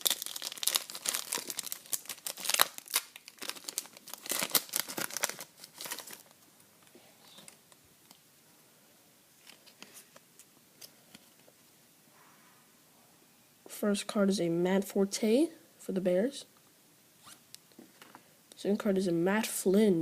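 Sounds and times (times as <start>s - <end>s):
wrapper crinkling and tearing: 0.0s - 6.4s.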